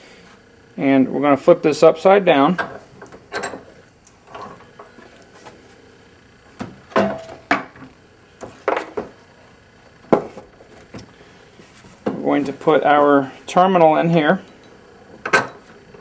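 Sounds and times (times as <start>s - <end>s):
metal tools knocking on workbench: 6.6s - 7.8s.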